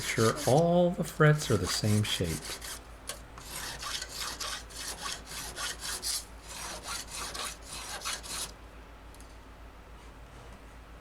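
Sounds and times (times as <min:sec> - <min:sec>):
file scraping guitar frets: 0:00.0 - 0:00.8, 0:01.4 - 0:02.8, 0:03.4 - 0:08.5.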